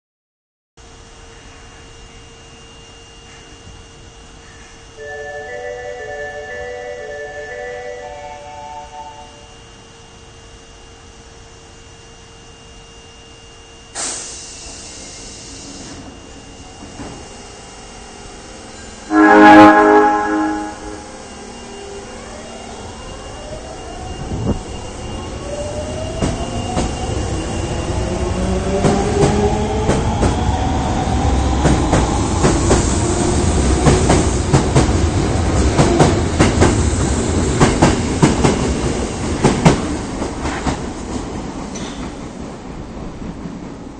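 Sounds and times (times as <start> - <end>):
train traction motors whining: 13.6 - 40.8.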